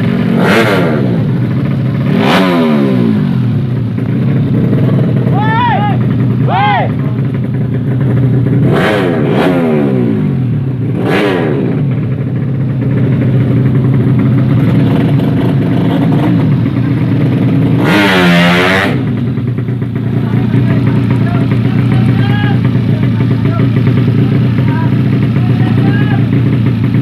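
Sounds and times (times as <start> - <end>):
motorcycle engine revving high: 0.0 - 27.0
motorcycle engine running: 0.0 - 27.0.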